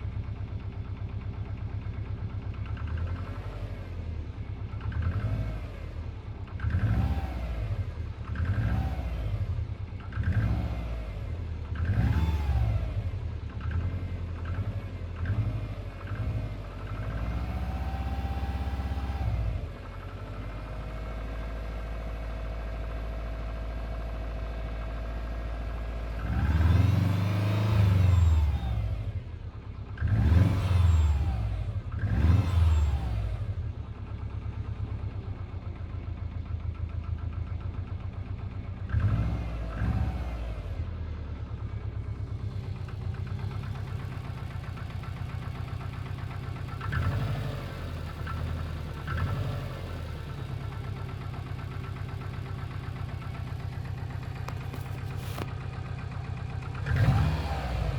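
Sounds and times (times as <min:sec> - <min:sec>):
car engine idling with knock: 0:00.0 - 0:57.9
engine revving: 0:04.8 - 0:20.6, 0:26.0 - 0:29.3, 0:29.9 - 0:33.6, 0:38.8 - 0:41.0, 0:42.1 - 0:55.6, 0:56.5 - 0:57.9.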